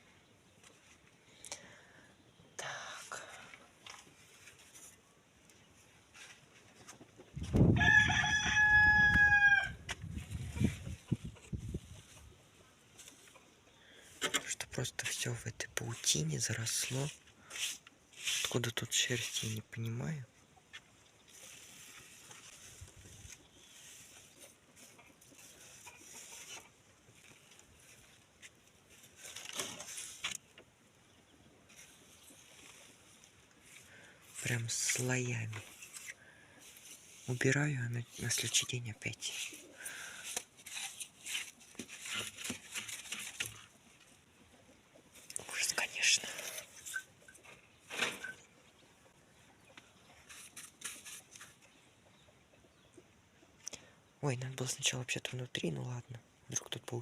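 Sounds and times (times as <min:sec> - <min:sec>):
rooster crowing: 0:07.7 - 0:09.8
brush scraping a wall: 0:15.9 - 0:19.6, 0:21.3 - 0:30.5, 0:31.7 - 0:37.5, 0:39.2 - 0:43.7, 0:50.2 - 0:51.6.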